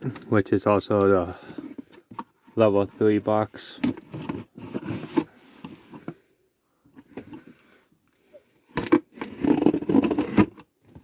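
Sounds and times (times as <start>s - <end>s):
cardboard box rustling: 1.5s - 6.2s, 8.8s - 11.0s.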